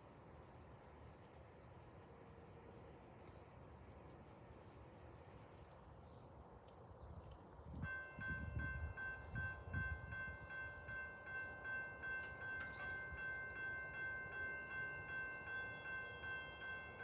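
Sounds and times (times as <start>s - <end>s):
crossing warning bell ringing: 7.8s - 17.0s.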